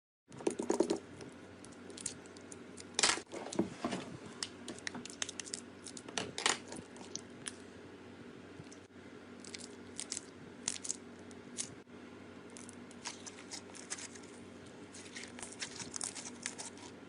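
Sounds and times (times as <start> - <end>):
crunchy material crackling: 12.5 - 17.0.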